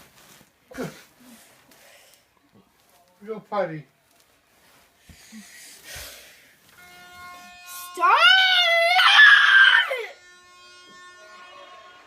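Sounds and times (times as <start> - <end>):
toddler screaming: 8.1 - 10.1.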